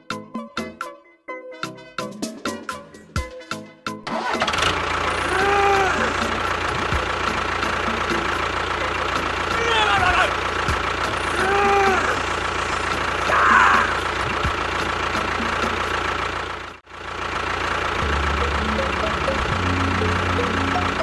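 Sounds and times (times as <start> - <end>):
small engine running: 4.1 - 21.0
deep steady drone: 4.7 - 16.8, 17.7 - 21.0.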